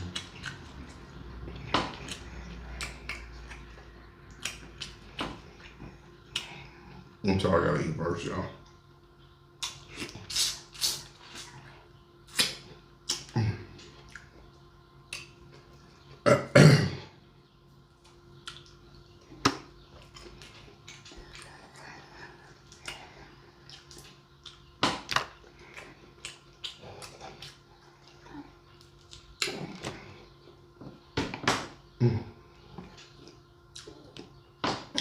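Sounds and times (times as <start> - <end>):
person eating with mouth sounds: 0.0 - 7.1, 9.6 - 14.4, 19.4 - 30.2.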